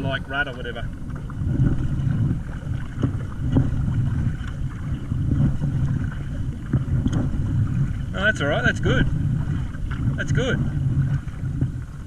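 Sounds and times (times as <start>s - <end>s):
wind buffeting microphone: 0.0s - 12.0s.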